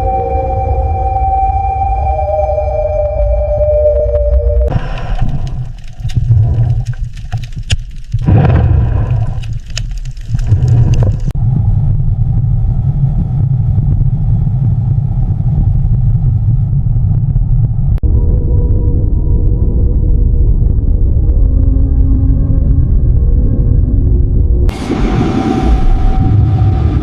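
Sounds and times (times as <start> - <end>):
deep low rumble: 0.0 - 27.0
crackling pops: 4.7 - 11.4.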